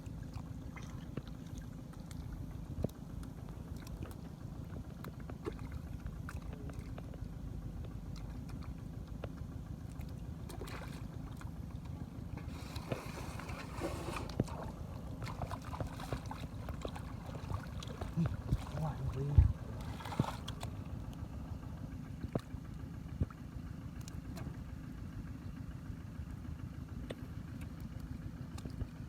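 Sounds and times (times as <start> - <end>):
shallow water splashing: 0.0 - 7.4, 8.1 - 23.4
steady low rumble: 0.0 - 29.0.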